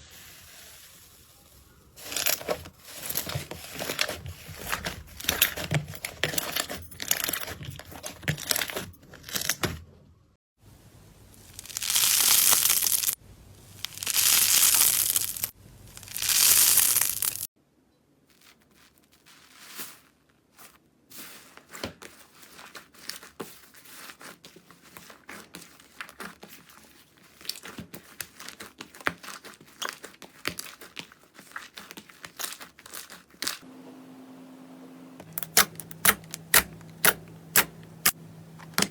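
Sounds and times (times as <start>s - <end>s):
slime stretching noisily: 11.5s - 13.2s, 13.8s - 17.5s.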